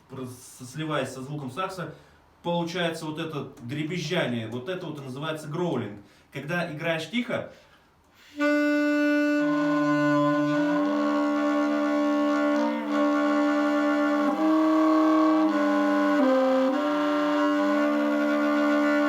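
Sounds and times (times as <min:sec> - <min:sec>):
saxophone played softly: 0:08.1 - 0:19.0
person singing into saxophone: 0:08.2 - 0:19.0.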